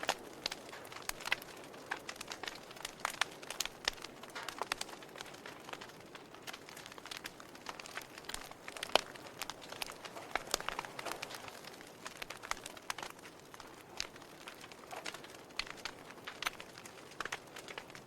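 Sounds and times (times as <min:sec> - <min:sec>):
wood fire crackling: 0:00.0 - 0:18.0.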